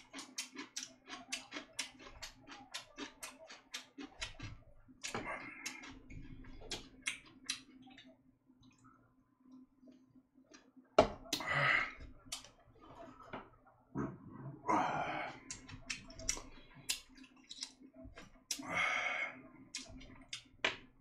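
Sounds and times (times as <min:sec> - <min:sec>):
person chewing with clicks: 0:00.0 - 0:08.9, 0:12.2 - 0:12.6, 0:15.4 - 0:18.7, 0:19.7 - 0:20.8.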